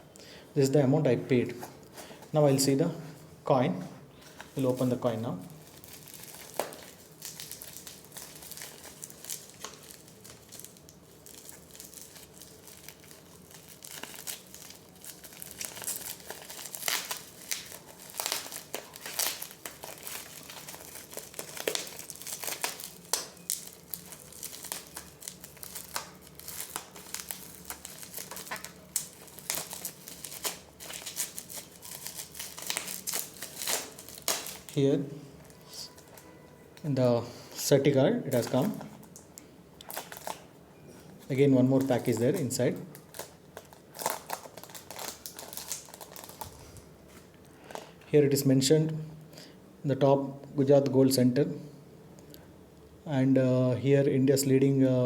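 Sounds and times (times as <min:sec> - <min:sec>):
packaging crinkling and tearing: 0:04.2 - 0:36.8, 0:38.3 - 0:40.6, 0:41.2 - 0:48.0.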